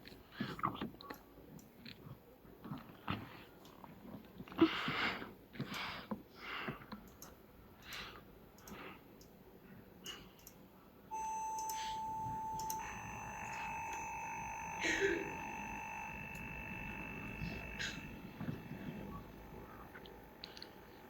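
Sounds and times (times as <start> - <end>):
electronic beep tone: 11.1 - 21.0
scattered clicks: 11.2 - 21.0.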